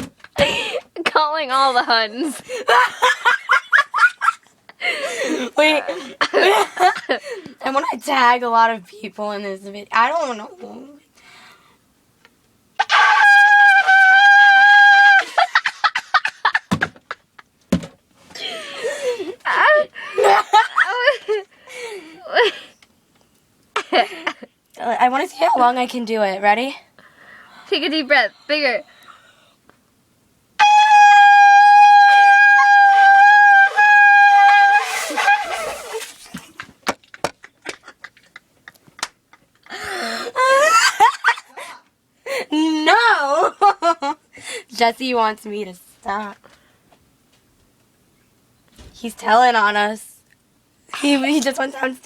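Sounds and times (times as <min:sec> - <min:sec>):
ram's horn blowing: 0:30.6 - 0:36.0.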